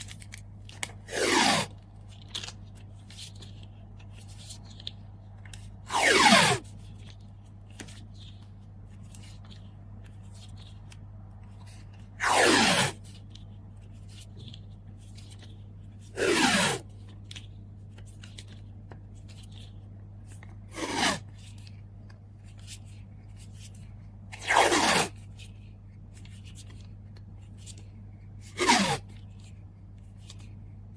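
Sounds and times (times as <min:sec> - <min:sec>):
low steady hum: 0:00.0 - 0:30.9
tape pulled off roll screeching: 0:01.1 - 0:01.7, 0:05.9 - 0:06.6, 0:12.2 - 0:13.0, 0:16.2 - 0:16.8, 0:20.7 - 0:21.2.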